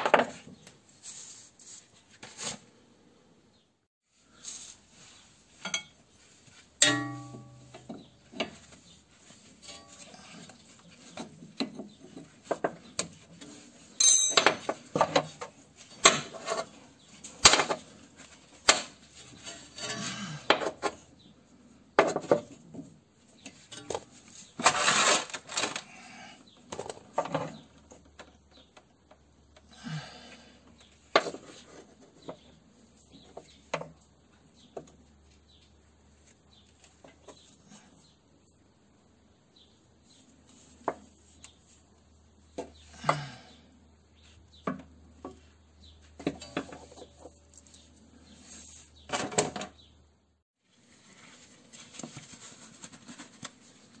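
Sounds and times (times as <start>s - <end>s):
hand tools clinking on car parts: 6.8s - 7.9s, 14.0s - 14.8s.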